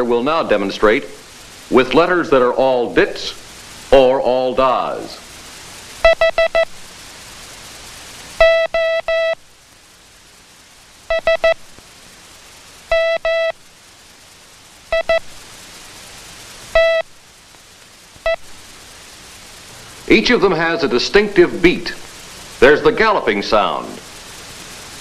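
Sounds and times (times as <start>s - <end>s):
morse code beeps: 6.0s - 6.7s, 8.4s - 9.4s, 11.1s - 11.6s, 12.9s - 13.5s, 14.9s - 15.2s, 16.8s - 17.0s.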